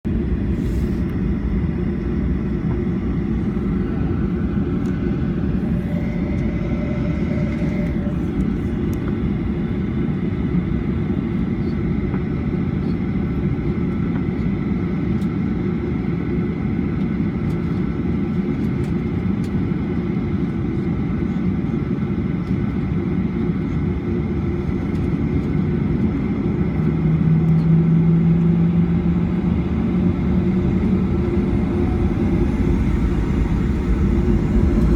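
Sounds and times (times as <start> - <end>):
low hum: 0.0 - 11.8, 24.4 - 34.9
aircraft cabin engine rumble: 0.0 - 34.9
faint engine whines: 0.1 - 34.9.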